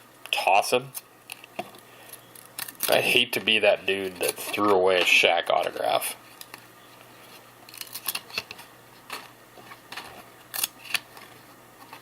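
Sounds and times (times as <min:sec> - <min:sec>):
trading cards snapping and rustling: 0:07.6 - 0:12.0.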